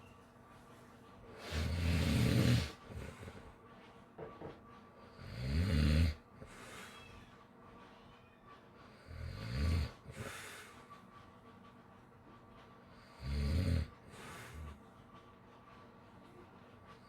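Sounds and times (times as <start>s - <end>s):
deep snores: 1.4s - 2.8s, 5.2s - 6.2s, 9.1s - 10.3s, 13.1s - 13.9s.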